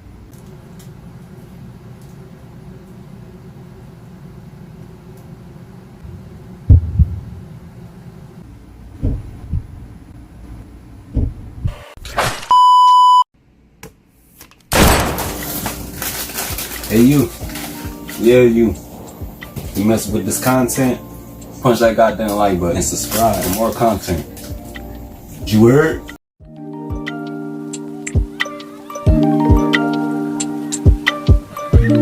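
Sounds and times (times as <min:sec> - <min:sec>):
dull thumps: 0:09.0 - 0:09.8
high-pitched censor bleep: 0:12.5 - 0:13.2.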